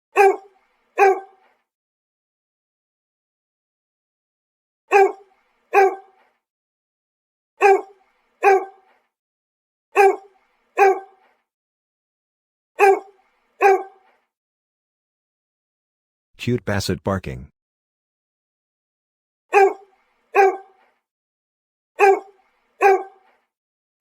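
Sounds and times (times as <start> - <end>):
dog barking deeply: 19.5 - 19.8.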